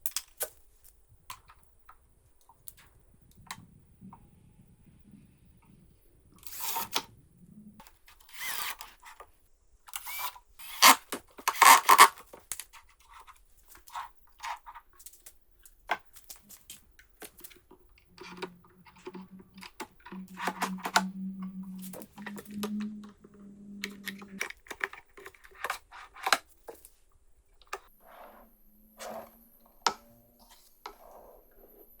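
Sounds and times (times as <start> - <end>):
low steady hum: 1.0 - 8.2, 16.5 - 25.4.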